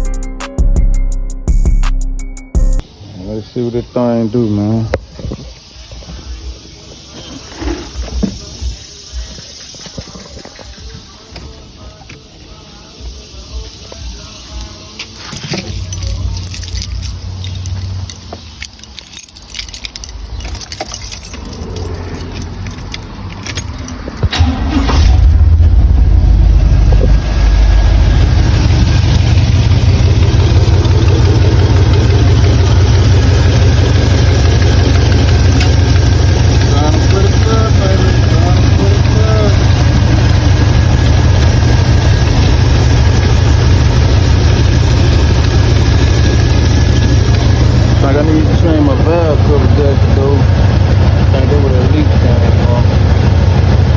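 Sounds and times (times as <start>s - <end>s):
car engine idling: 2.8s - 53.9s
keys jangling: 15.0s - 25.0s.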